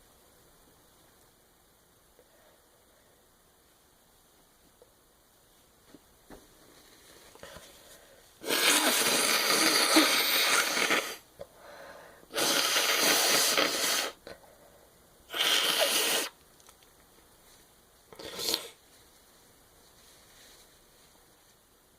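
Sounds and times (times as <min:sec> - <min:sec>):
short breaths: 0:07.3 - 0:16.3
woman blowing her nose: 0:08.4 - 0:11.3, 0:12.3 - 0:14.2, 0:15.3 - 0:16.4, 0:18.2 - 0:18.8.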